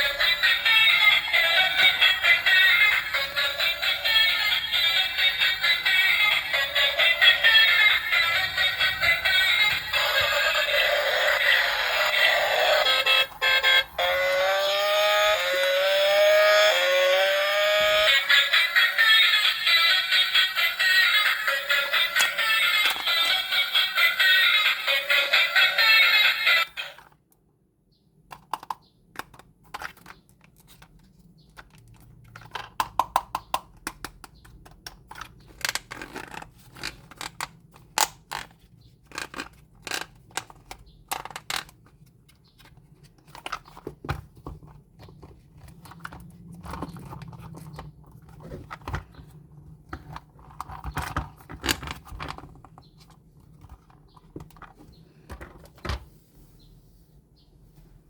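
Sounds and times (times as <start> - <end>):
toy parts clicking and tapping: 21.5 - 24.0, 28.3 - 41.9.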